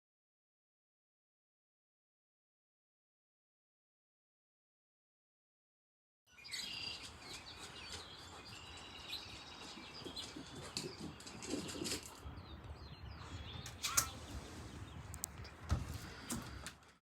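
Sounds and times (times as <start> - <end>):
birds chirping: 6.3 - 17.0.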